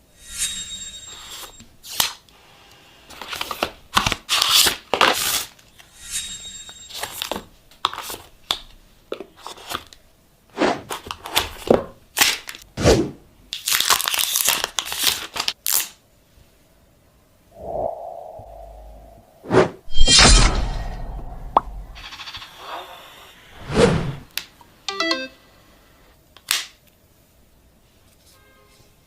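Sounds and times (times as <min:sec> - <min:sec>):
packaging tearing and crinkling: 0:13.6 - 0:16.0.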